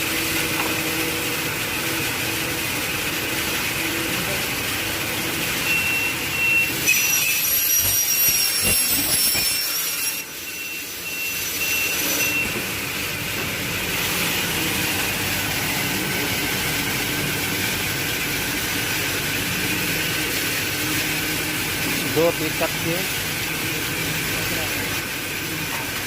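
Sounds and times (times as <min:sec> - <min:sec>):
machine running noise: 0:00.0 - 0:26.0
circular saw whine: 0:05.3 - 0:13.0.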